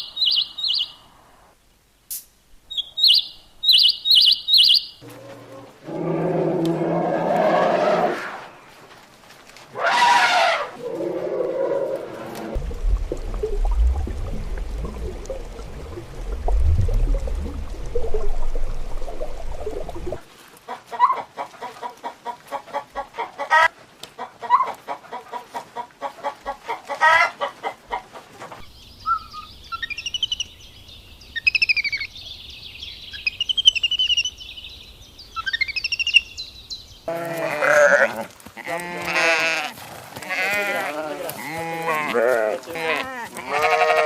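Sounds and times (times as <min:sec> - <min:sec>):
low rushing noise: 0:11.9 - 0:20.3
chicken clucking: 0:20.7 - 0:28.6
animal bleating: 0:37.1 - 0:44.0.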